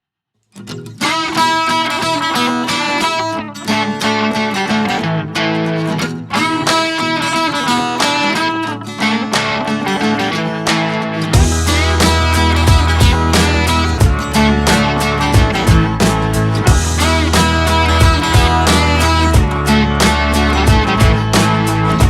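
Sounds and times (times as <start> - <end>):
plucked guitar music: 0.5 - 22.0.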